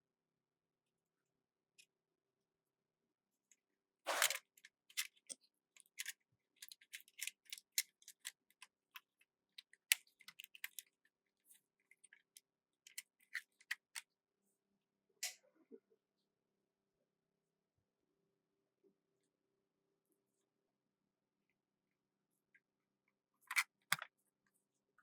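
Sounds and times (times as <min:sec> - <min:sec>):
short scrape: 0:04.1 - 0:04.4
small parts clicking and tapping: 0:04.2 - 0:11.1, 0:11.8 - 0:14.1, 0:23.4 - 0:24.2.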